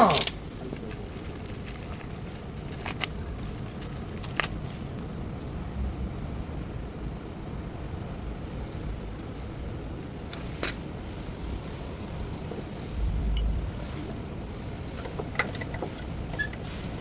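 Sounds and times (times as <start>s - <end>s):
car road noise rumble: 1.5s - 17.0s.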